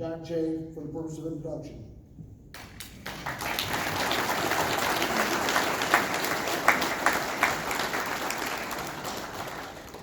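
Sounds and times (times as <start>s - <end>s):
audience applauding: 2.6s - 10.0s.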